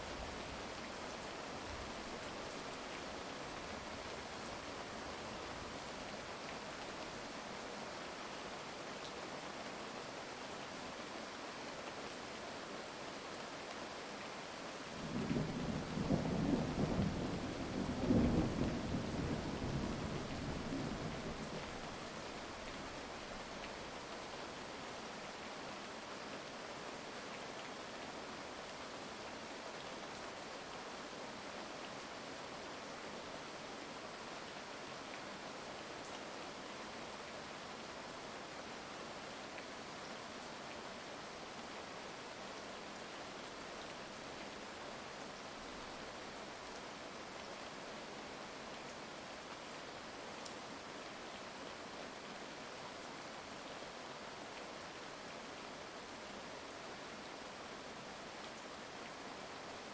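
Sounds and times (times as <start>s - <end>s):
heavy rain falling: 14.4s - 25.0s.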